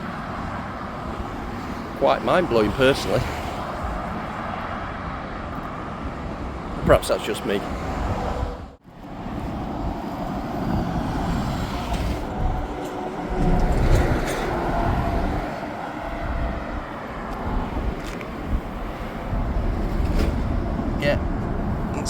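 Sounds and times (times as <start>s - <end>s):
road traffic rushing: 0.0s - 22.0s
deep rumble of vehicles: 7.6s - 22.0s.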